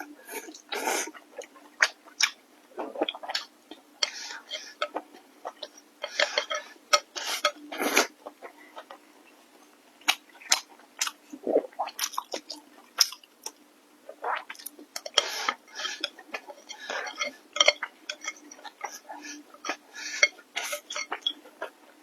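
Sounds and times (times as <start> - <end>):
wet chewing of food: 10.0 - 21.9.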